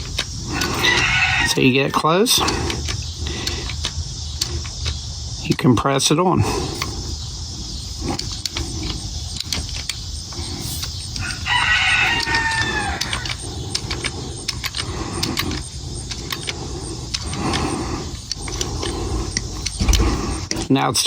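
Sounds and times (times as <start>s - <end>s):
rooster crowing: 0.5s - 2.3s, 11.2s - 13.4s
metal clicks of hand crimper: 12.1s - 20.7s.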